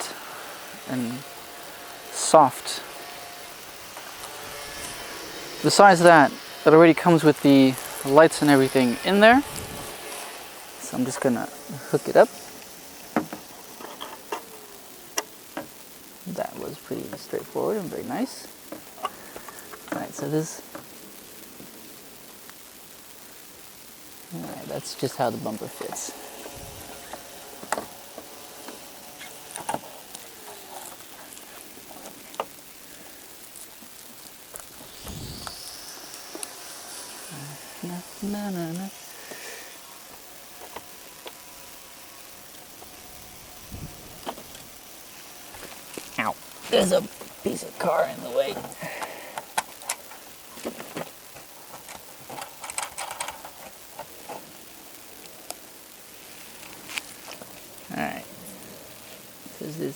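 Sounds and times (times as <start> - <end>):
steady hiss: 0.0 - 59.9.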